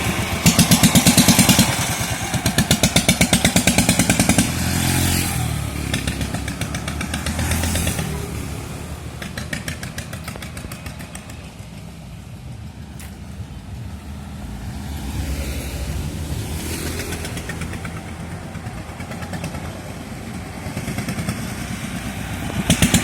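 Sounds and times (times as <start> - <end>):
diesel engine pulsing: 0.0 - 23.0.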